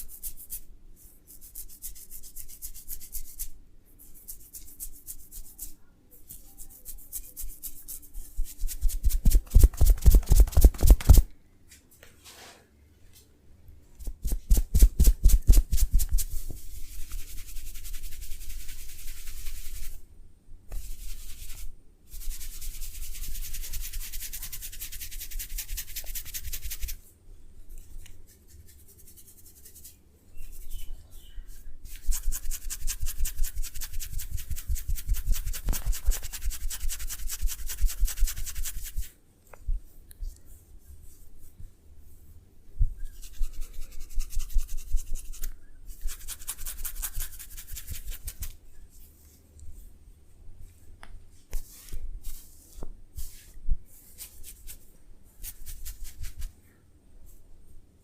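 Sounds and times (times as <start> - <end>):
hands rubbing on body: 6.3 - 11.3, 14.0 - 20.0, 20.7 - 27.0, 31.8 - 39.1, 39.7 - 49.4, 51.5 - 56.6.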